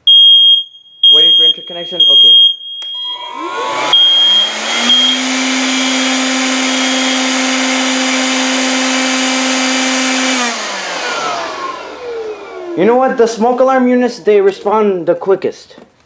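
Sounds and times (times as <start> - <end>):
smoke alarm high beeps: 0.0 - 7.4
electric motor humming: 3.2 - 13.0.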